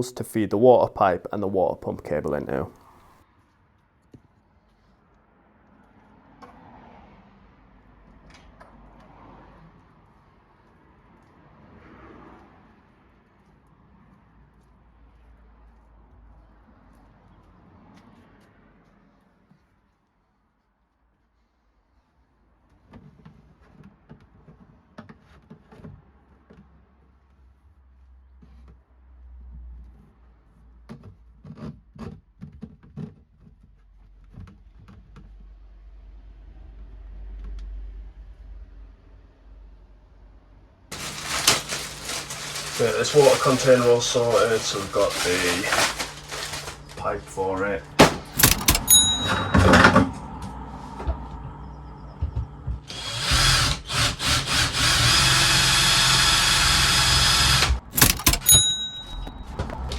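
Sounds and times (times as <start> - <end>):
handling clicks and knocks: 47.9 - 50.2, 57.8 - 59.9
low rumble: 49.5 - 53.0
power drill running: 52.9 - 59.0.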